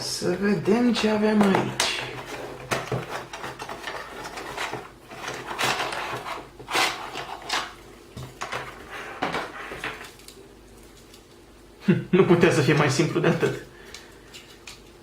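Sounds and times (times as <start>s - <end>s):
packaging rustling: 2.1s - 7.8s.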